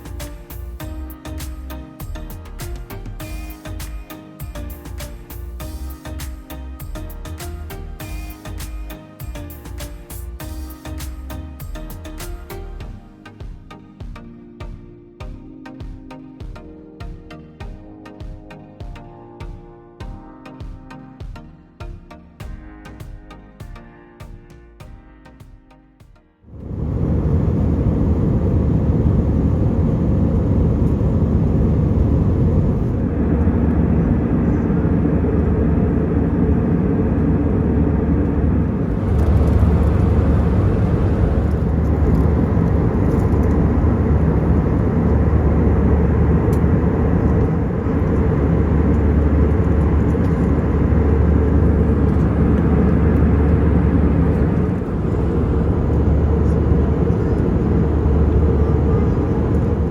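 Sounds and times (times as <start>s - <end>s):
jet engines rumbling: 26.5s - 59.9s.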